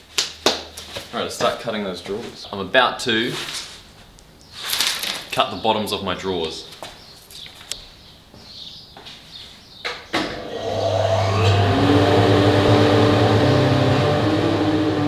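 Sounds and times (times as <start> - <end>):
power saw running: 10.4 - 15.0
electric guitar music: 10.9 - 15.0.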